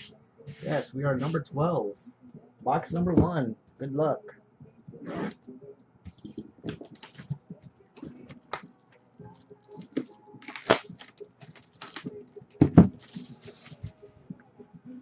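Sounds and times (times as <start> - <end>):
packaging clicks and taps: 6.1 - 12.9.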